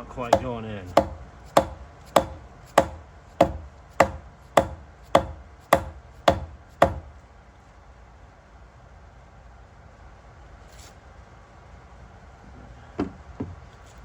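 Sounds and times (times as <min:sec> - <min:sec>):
mallet knocking on metal pump: 0:00.3 - 0:07.1.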